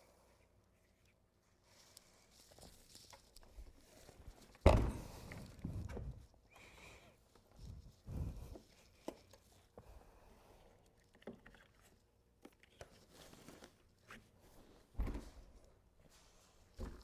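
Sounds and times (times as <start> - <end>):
parts thumping and knocking: 4.7 - 5.2.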